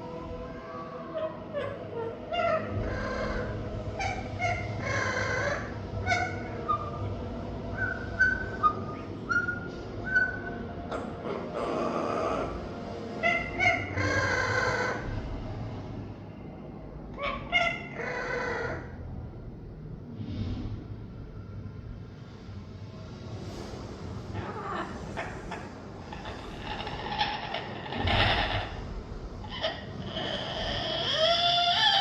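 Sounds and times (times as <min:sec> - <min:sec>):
parrot squawking: 0:00.4 - 0:15.2, 0:17.2 - 0:19.0, 0:24.4 - 0:32.0
parrot chirping and whistling: 0:07.8 - 0:10.6.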